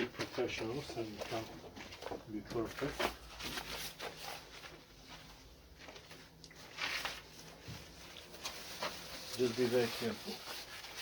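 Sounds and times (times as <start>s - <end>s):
paper towel rustling and rubbing: 2.7s - 5.4s, 6.6s - 11.0s.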